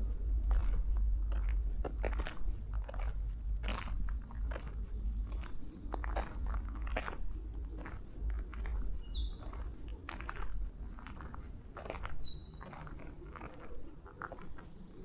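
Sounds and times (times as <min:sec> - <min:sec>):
footsteps crunching on path: 0:00.0 - 0:15.0
songbird singing trills: 0:07.4 - 0:13.3.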